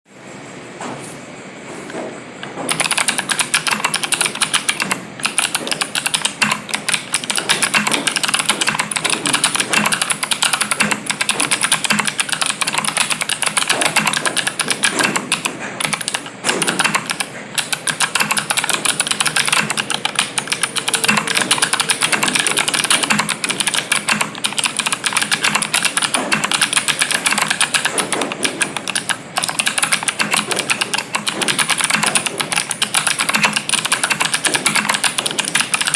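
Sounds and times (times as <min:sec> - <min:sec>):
fast mechanical keyboard typing: 0:02.4 - 0:35.9.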